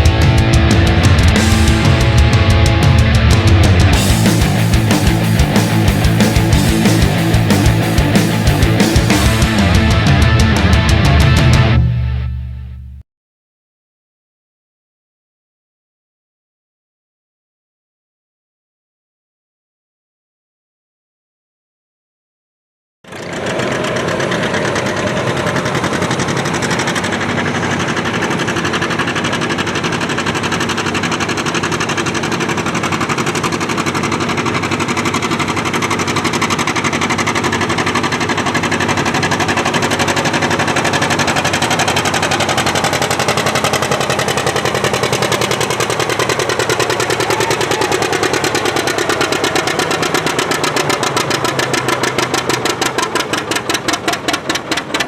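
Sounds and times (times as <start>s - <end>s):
tractor engine under load: 23.1s - 55.0s.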